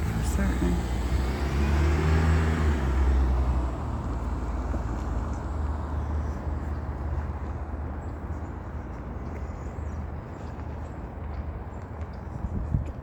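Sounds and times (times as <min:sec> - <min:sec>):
passing vehicle rumble: 0:00.0 - 0:07.8.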